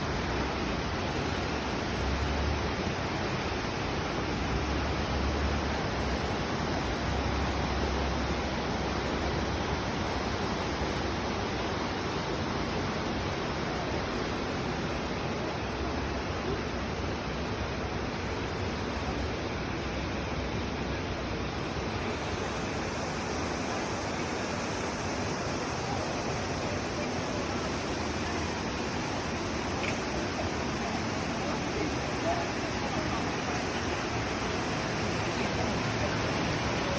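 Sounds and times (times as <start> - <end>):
steady rushing noise: 17.5 - 36.9.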